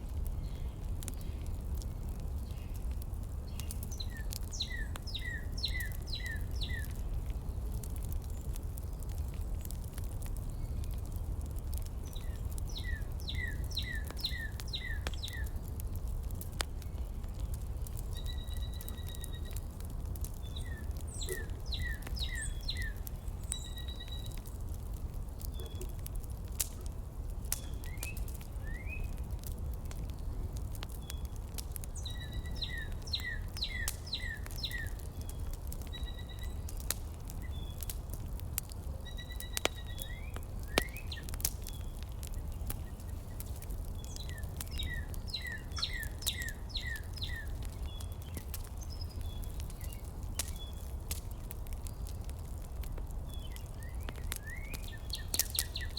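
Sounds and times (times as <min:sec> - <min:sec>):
birds chirping: 0:11.8 - 0:26.1, 0:31.1 - 0:38.2, 0:39.0 - 0:52.4, 0:53.3 - 0:55.9
faint clicks: 0:36.7 - 0:55.8.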